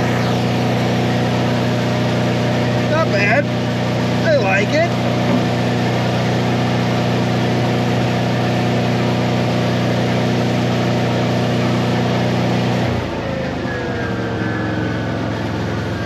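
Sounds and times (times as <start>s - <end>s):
welding machine running: 0.0s - 12.8s.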